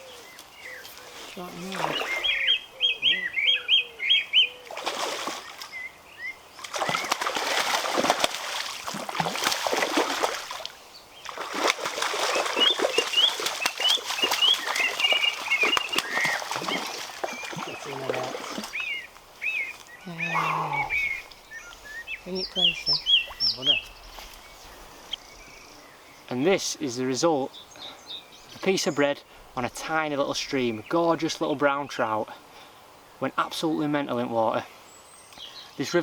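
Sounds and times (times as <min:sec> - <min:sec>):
songbirds chirping: 0:00.0 - 0:36.0
fish splashing in water: 0:04.7 - 0:05.7, 0:06.6 - 0:19.0.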